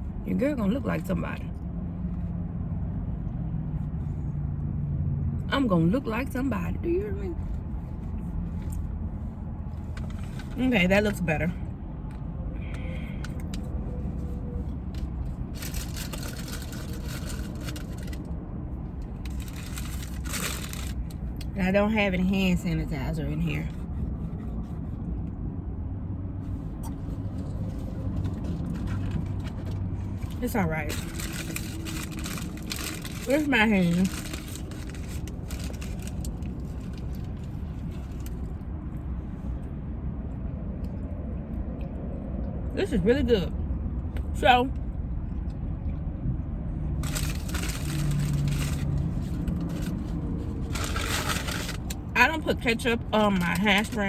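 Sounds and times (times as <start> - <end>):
low rumble inside car: 0.0 - 54.0
paper packaging crinkling: 15.0 - 18.3, 19.1 - 21.2, 27.4 - 38.4, 47.0 - 52.1.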